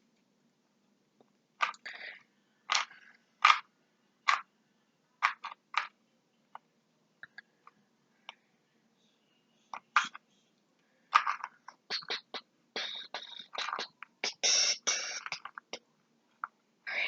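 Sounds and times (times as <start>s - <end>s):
speed cube clacking: 11.2s - 15.8s.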